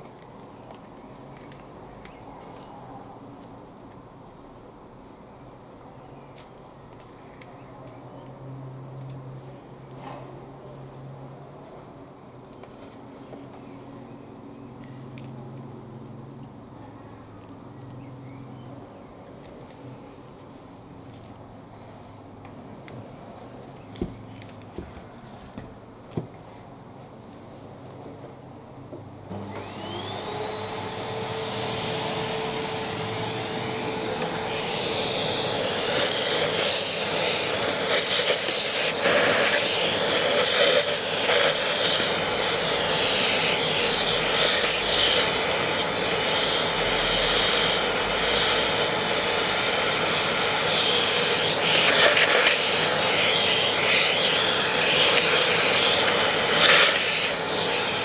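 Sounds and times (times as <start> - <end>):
vacuum cleaner motor whining: 29.3 - 58.0.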